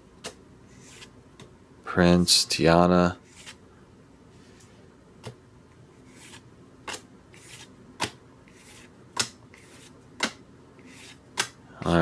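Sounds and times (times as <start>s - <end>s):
cards sliding: 3.3s - 3.6s, 6.1s - 11.6s.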